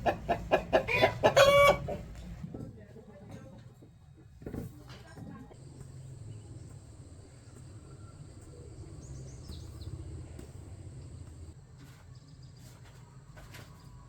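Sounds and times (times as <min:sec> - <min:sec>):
steady low rumble: 0:05.6 - 0:11.6
small bird chirping: 0:05.6 - 0:12.8.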